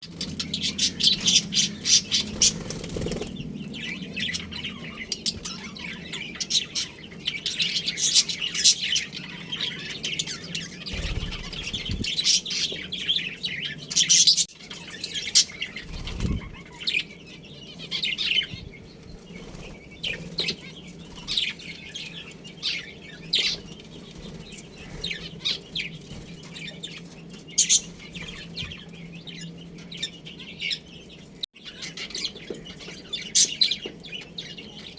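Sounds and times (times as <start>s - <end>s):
budgerigars chattering and chirping: 0.0s - 34.9s.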